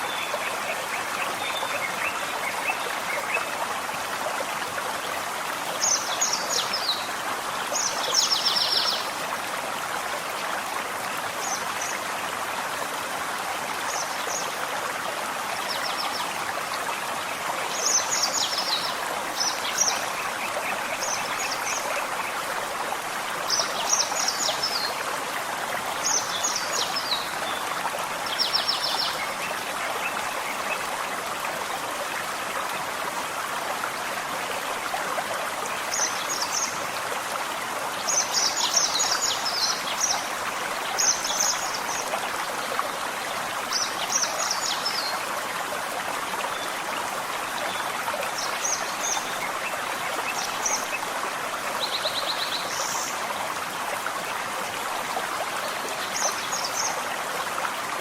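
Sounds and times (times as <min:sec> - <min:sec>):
forest stream running: 0:00.0 - 0:58.0.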